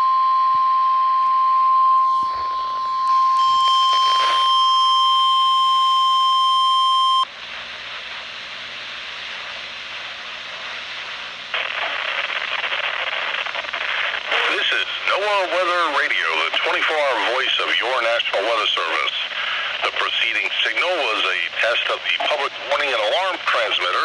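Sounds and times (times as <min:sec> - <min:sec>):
steady alarm tone: 0:01.1 - 0:07.2
radio hiss: 0:02.0 - 0:04.6, 0:07.4 - 0:24.0.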